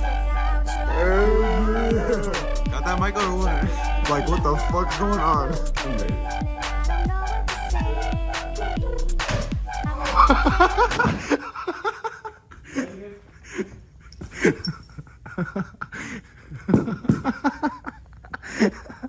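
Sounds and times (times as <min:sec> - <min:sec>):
music with heavy bass beat: 0:00.0 - 0:11.2
men laughing: 0:00.9 - 0:06.1, 0:09.8 - 0:19.0.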